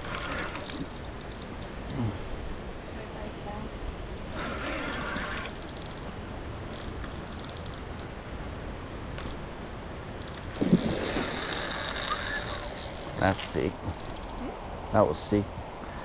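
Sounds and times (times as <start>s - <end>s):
fishing reel clicking and winding: 0.0s - 1.9s, 4.2s - 8.1s, 9.2s - 9.4s, 10.2s - 14.5s.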